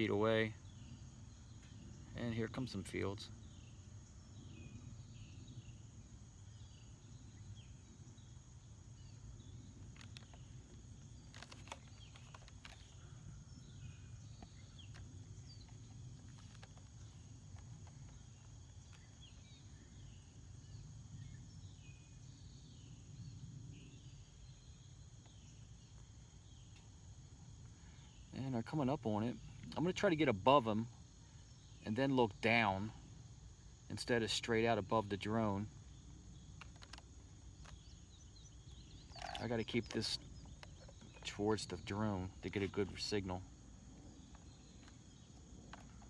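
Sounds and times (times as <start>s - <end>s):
crickets trilling: 0.0s - 46.0s.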